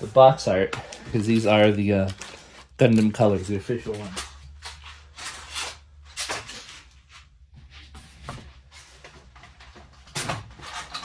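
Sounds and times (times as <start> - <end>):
packaging rustling: 0.9 - 5.8.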